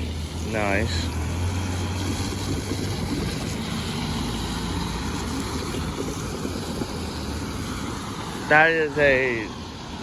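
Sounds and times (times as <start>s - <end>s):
passenger train wheels on rail: 0.0s - 8.5s.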